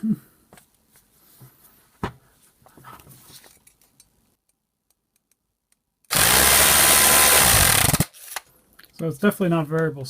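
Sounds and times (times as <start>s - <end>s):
rotary hammer drill motor running: 6.1s - 8.1s.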